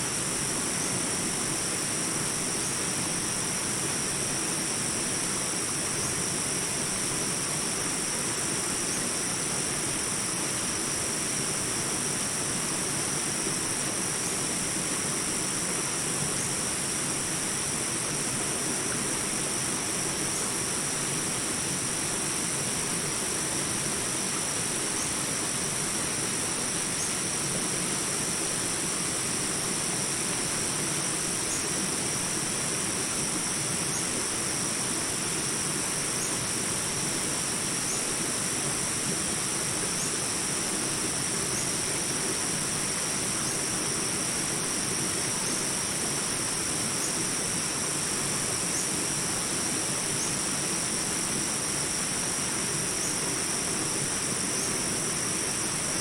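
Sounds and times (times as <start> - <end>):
faint insect chirps: 0.0 - 56.0
high insect drone: 0.0 - 56.0.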